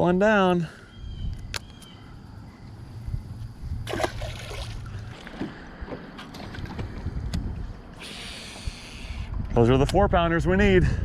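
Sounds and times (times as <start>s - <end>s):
water splash: 3.8s - 5.4s
water lapping against boat hull: 3.8s - 7.1s.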